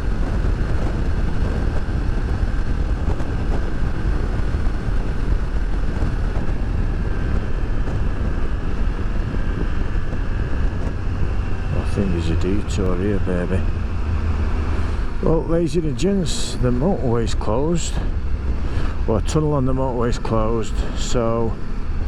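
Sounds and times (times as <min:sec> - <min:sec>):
wind and road noise: 0:00.0 - 0:22.0
faint high whine: 0:11.1 - 0:18.4.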